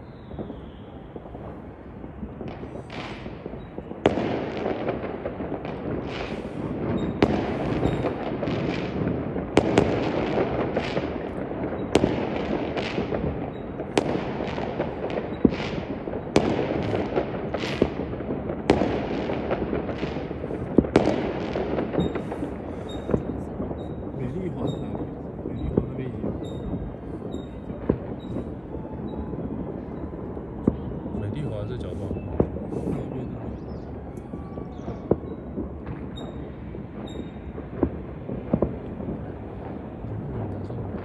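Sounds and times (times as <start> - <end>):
din of smaller firework bursts: 0.0 - 41.0
sharp aerial firework bursts: 1.4 - 28.7, 35.0 - 41.0.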